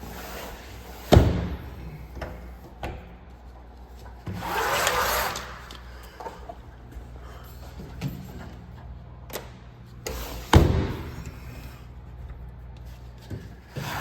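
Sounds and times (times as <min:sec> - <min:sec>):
sliding door thud on track: 0:10.1 - 0:11.2.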